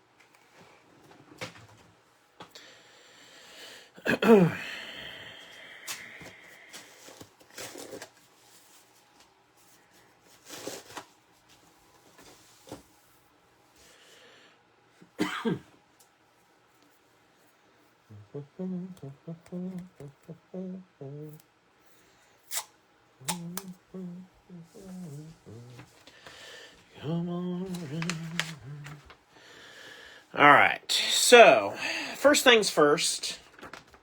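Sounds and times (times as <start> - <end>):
person coughing: 4.0 - 4.8, 15.2 - 15.7.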